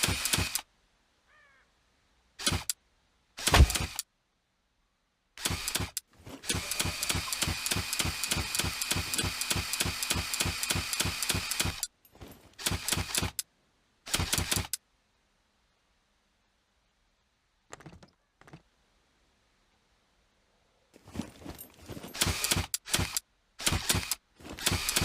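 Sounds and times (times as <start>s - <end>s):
mechanical crossbow shots: 2.4s - 2.8s, 3.4s - 4.1s, 5.4s - 11.9s, 14.1s - 14.8s.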